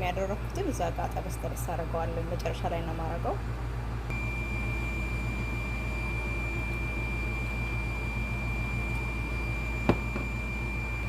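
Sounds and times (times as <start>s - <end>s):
low even hum: 0.0s - 11.0s
high-pitched electronic whine: 4.1s - 11.0s.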